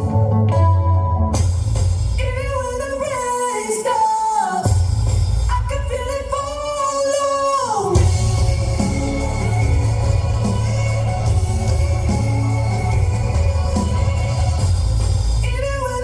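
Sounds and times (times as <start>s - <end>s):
pop-rock band: 0.0s - 16.0s
bass line: 8.0s - 15.9s.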